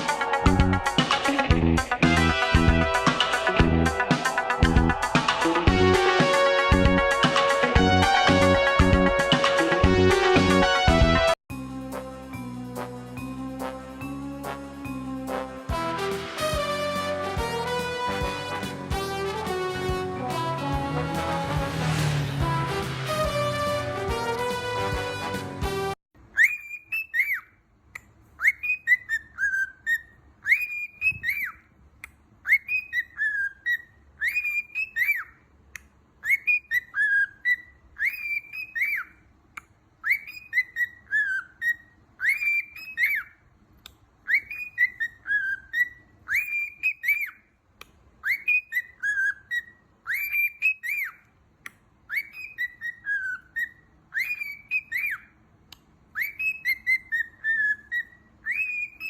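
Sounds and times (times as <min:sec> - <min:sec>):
pet bird whistling: 0:26.3 - 0:27.6, 0:28.4 - 0:31.7, 0:32.4 - 0:35.4, 0:36.2 - 0:39.2, 0:40.0 - 0:43.4, 0:44.2 - 0:47.4, 0:48.2 - 0:51.2, 0:52.1 - 0:55.4, 0:56.1 - 0:59.0.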